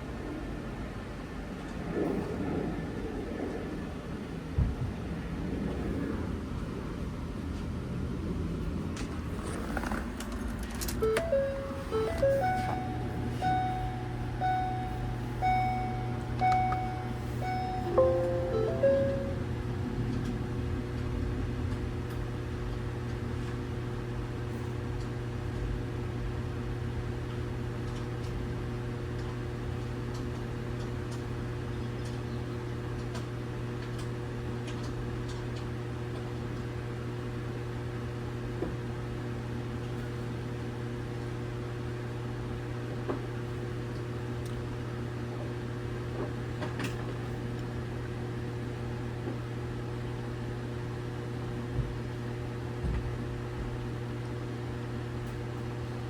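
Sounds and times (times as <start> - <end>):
steady machine hum: 10.9 - 20.0.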